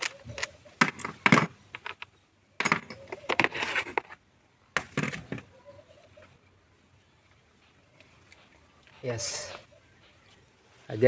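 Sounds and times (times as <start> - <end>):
tools and metal parts clattering: 0.0 - 4.0.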